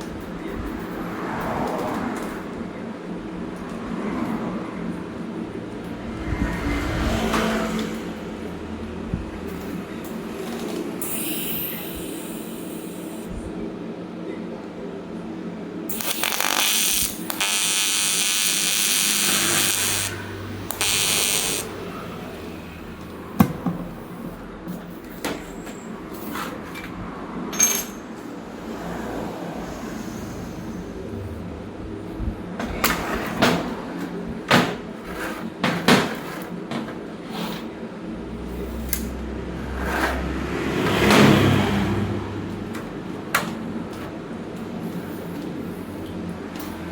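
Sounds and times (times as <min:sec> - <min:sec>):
welding arc buzzing: 0:11.0 - 0:13.3, 0:15.9 - 0:23.2
hard objects knocking: 0:23.4 - 0:23.9.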